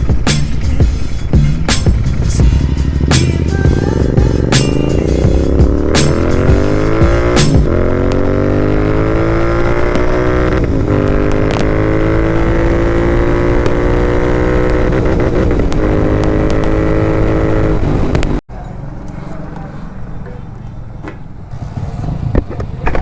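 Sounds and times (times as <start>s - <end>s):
motorcycle engine revving loud: 1.6s - 18.4s, 21.5s - 22.5s.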